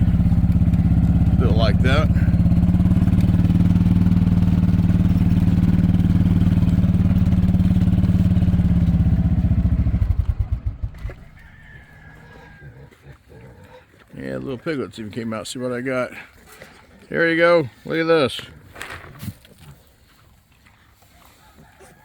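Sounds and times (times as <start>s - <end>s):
small vehicle engine running: 0.0s - 11.7s.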